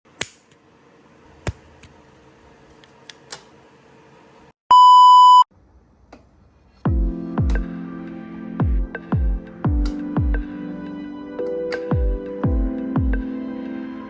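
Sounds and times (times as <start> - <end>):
electronic beep: 4.7 - 5.5.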